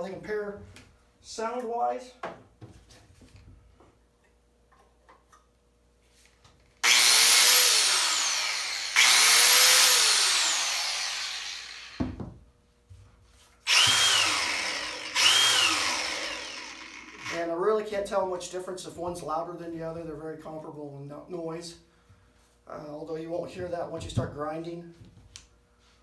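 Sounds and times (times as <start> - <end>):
angle grinder whining: 6.8 - 12.0, 13.7 - 17.4.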